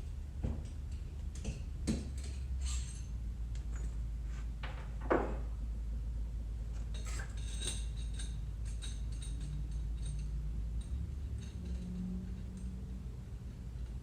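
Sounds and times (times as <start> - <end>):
steady low hum: 0.0 - 14.0
metal tools clinking and clattering: 6.8 - 12.8.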